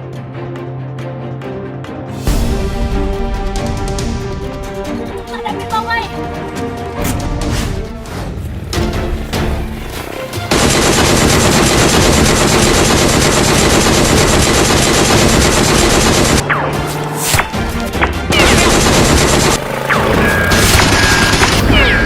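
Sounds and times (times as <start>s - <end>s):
background music: 0.0s - 22.0s
rapid automatic gunfire: 10.5s - 16.4s, 18.3s - 22.0s.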